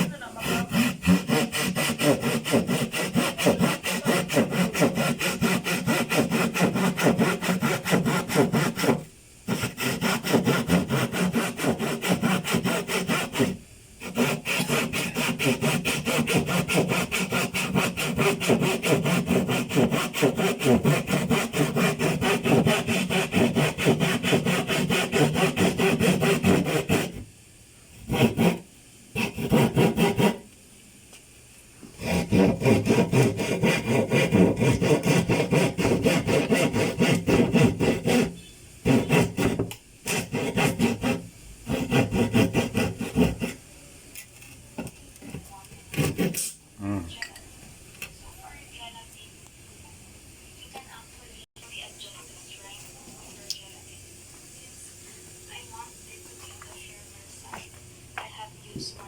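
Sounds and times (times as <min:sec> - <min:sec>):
handsaw cutting wood: 0:00.0 - 0:27.2, 0:28.0 - 0:28.6, 0:29.2 - 0:30.4, 0:32.0 - 0:43.6, 0:46.0 - 0:46.6.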